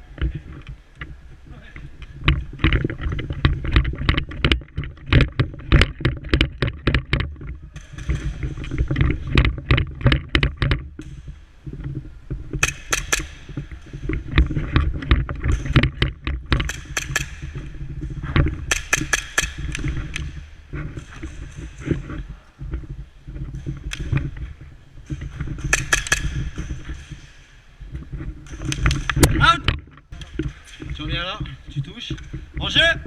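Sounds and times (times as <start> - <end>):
sharp clicks and knocks: 1.8 - 32.8.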